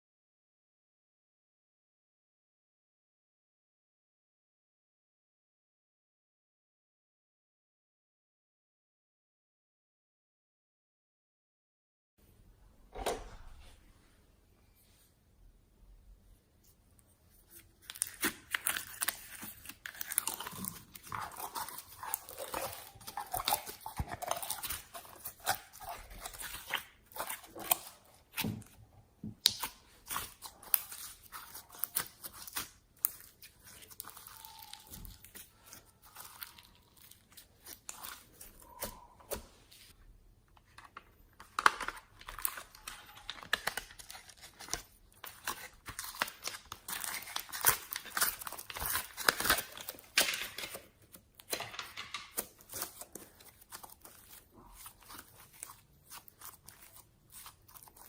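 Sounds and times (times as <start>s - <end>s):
slime squeezed by hand crackling: 29.4s - 39.2s.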